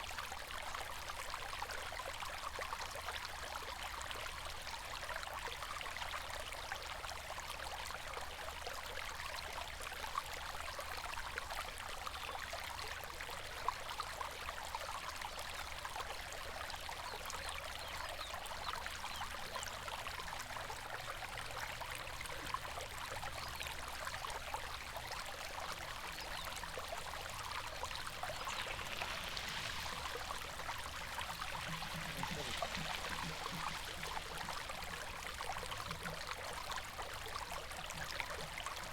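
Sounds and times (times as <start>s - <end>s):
river water rushing over stones: 26.3s - 37.0s.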